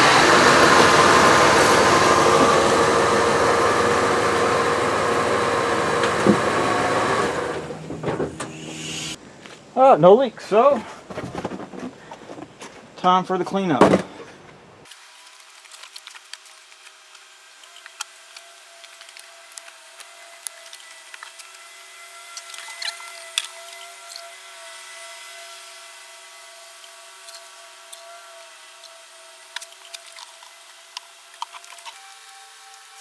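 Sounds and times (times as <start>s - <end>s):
steady hum: 0.0s - 9.2s.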